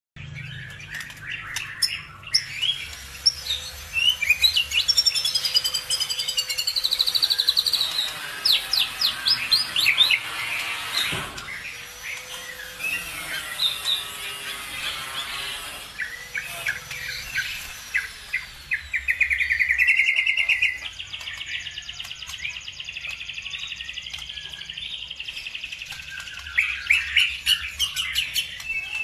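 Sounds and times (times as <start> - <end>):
songbird singing chirps and trills: 16.0 - 29.0.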